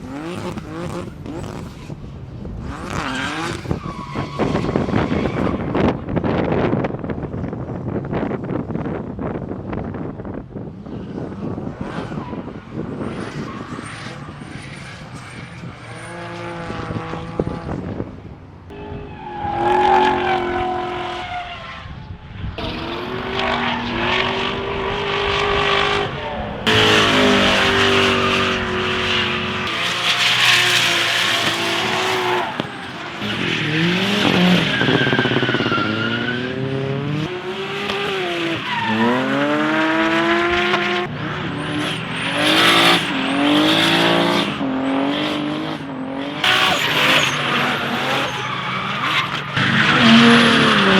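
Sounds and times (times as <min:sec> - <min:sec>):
race car engines revving: 0:00.0 - 0:50.9
tyres squealing: 0:46.5 - 0:50.9.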